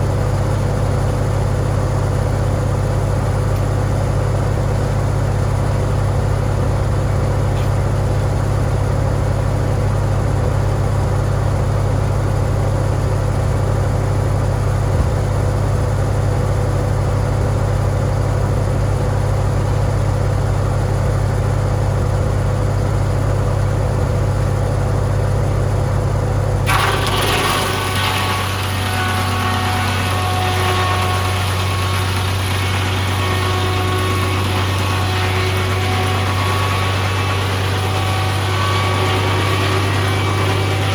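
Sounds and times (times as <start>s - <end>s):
board edger running: 26.6s - 40.9s.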